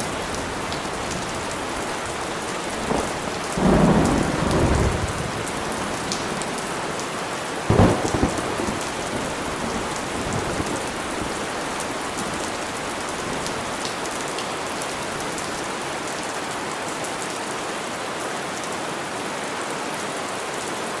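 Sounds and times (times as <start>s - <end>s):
steady rain falling: 0.0s - 21.0s
rumble of thunder: 2.8s - 6.6s, 7.7s - 12.7s.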